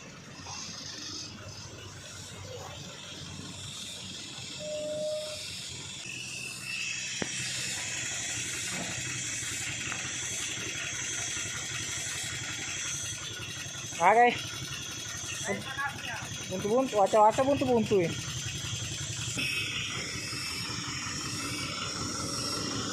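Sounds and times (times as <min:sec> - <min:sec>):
truck engine running: 0:00.0 - 0:22.9
whistle-like tone: 0:03.9 - 0:07.9.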